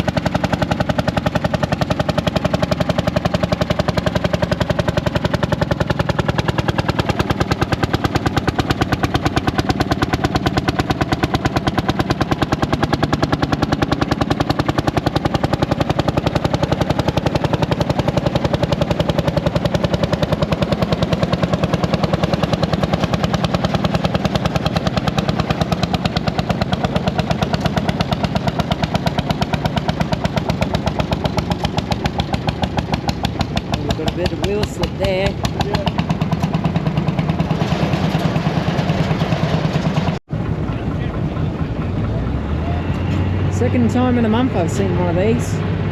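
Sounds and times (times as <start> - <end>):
tractor engine running: 0.0 - 45.9.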